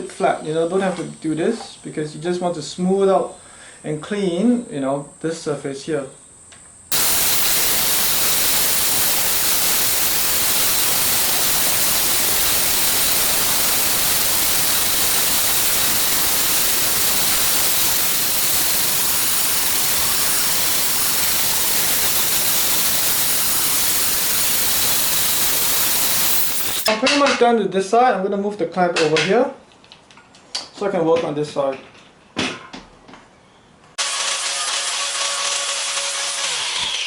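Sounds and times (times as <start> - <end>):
power grinder grinding metal: 6.9 - 26.9, 34.0 - 37.0.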